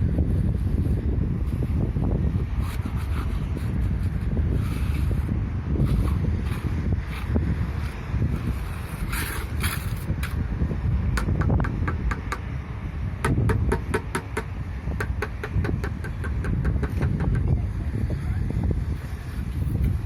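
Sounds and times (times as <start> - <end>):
wind rumble on microphone: 0.0 - 20.0
tool tapping on concrete: 11.1 - 12.5, 13.2 - 17.6.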